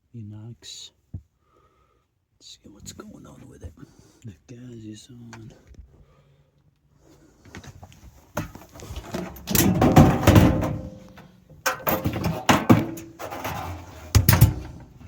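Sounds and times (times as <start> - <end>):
hands knocking and rattling hard objects: 8.4 - 15.0.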